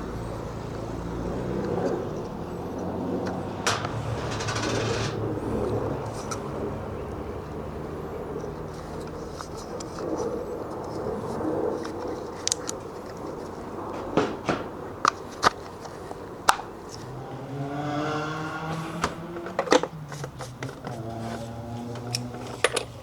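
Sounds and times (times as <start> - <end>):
machine hum: 0.0 - 6.9
tools clicking and knocking: 3.2 - 5.2, 21.9 - 23.0.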